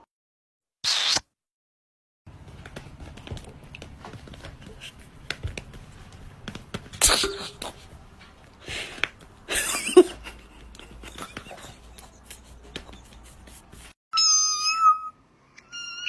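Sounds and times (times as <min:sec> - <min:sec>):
cat meowing high-pitched: 0:14.1 - 0:16.0.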